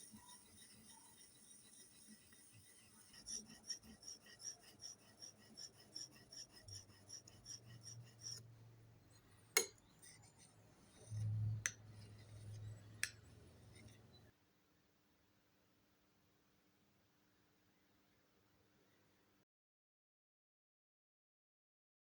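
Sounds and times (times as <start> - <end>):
steel blade scraping: 0.0 - 8.5, 9.1 - 14.2.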